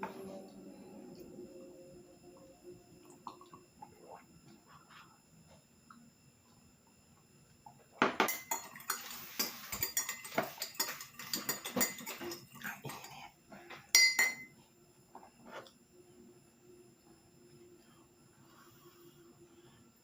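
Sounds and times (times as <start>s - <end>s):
metal spoon clinking in a cup: 8.2s - 13.2s, 13.9s - 14.5s.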